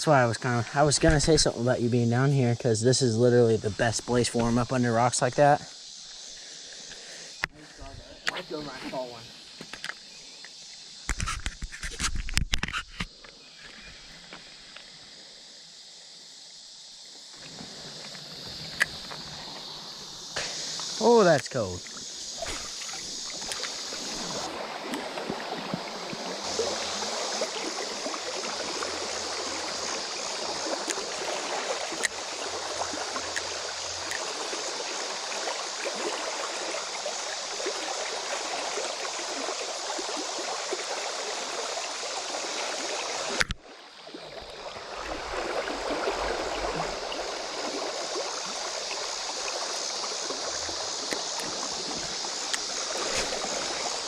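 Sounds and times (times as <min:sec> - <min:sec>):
creek water rushing over rocks: 0:17.4 - 0:54.0.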